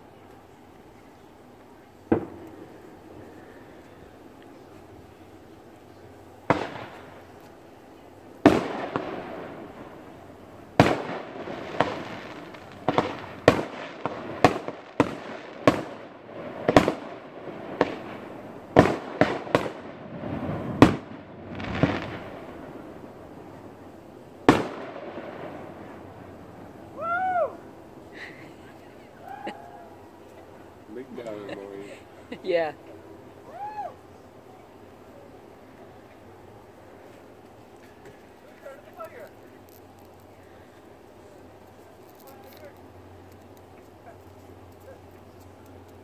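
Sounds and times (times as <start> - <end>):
fireworks bangs with rumble: 2.1 - 3.2, 6.4 - 7.4, 8.4 - 26.8.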